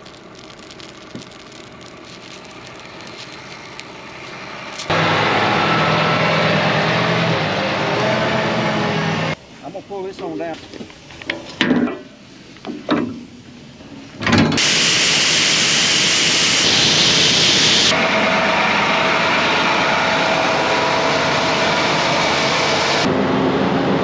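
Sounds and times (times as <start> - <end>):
loud rushing machine noise: 2.6 - 9.4, 14.6 - 24.0.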